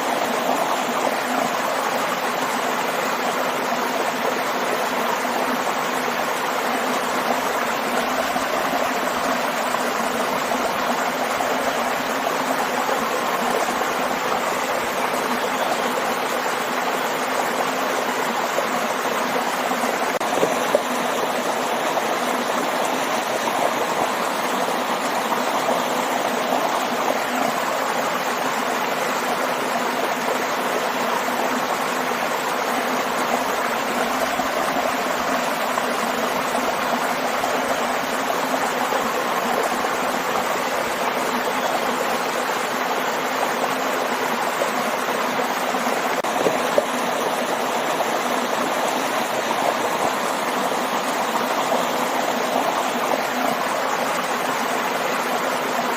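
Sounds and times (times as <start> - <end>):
water rushing in a stream: 0.0 - 55.9.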